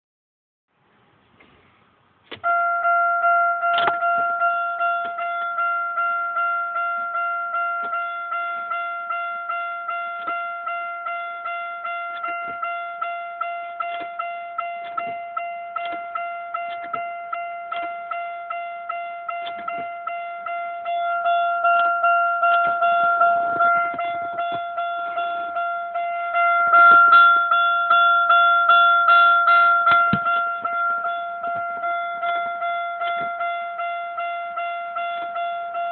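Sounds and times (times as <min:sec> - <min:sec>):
dashboard warning chime dinging: 0:02.3 - 0:35.9
clicks and knocks: 0:03.7 - 0:04.2, 0:12.0 - 0:12.8, 0:13.4 - 0:17.1, 0:19.4 - 0:33.6.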